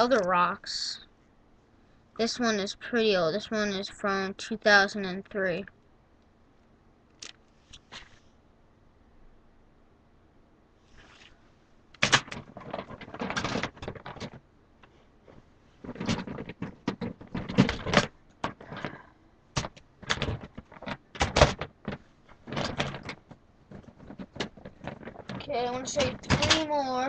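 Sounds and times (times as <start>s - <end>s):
plastic figures clicking and knocking: 12.0s - 19.0s, 19.6s - 27.0s.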